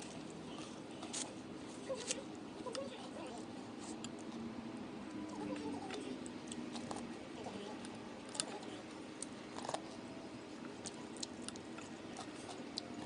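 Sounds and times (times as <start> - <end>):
eating noodles: 5.3 - 13.0.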